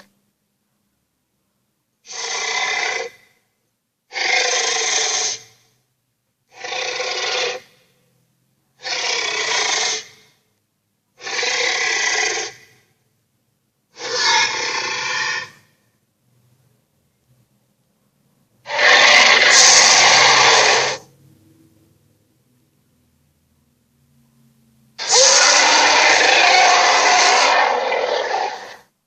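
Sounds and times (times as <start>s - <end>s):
raspy hissing creature roars: 2.1s - 3.2s, 4.1s - 5.6s, 6.5s - 7.8s, 8.8s - 10.3s, 11.2s - 12.7s, 14.0s - 15.6s, 18.7s - 21.1s, 25.0s - 28.8s.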